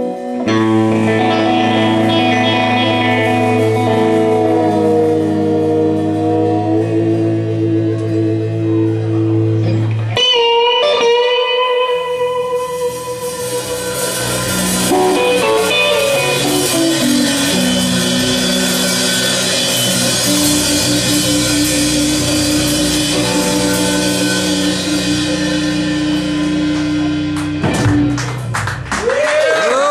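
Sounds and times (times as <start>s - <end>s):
electric guitar sustained note: 0.0s - 28.9s
blues band playing: 0.0s - 29.3s
cymbals: 11.9s - 28.2s
drum and cymbal hits: 12.5s - 29.0s.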